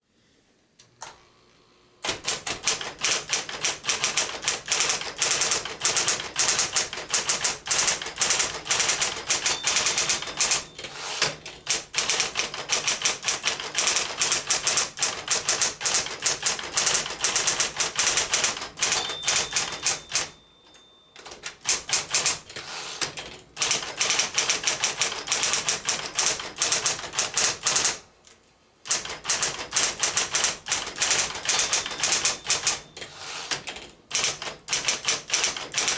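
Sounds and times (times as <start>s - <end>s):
typewriter keys striking: 2.0s - 20.4s, 21.2s - 28.0s, 28.9s - 35.9s
typewriter bell ringing: 2.6s - 22.4s, 29.0s - 33.2s.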